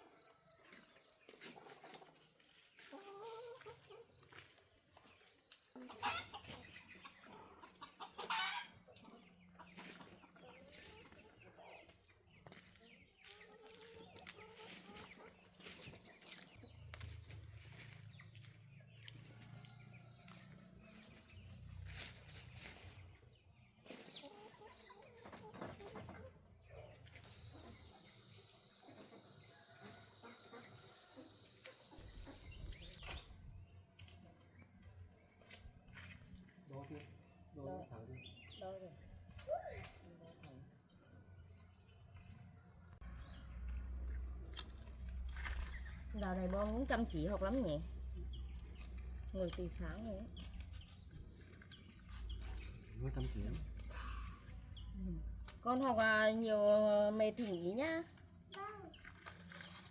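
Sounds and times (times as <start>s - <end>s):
chickens clucking: 0.1s - 4.5s, 5.4s - 17.0s, 23.0s - 27.8s
small knocks and rustles: 25.2s - 26.4s.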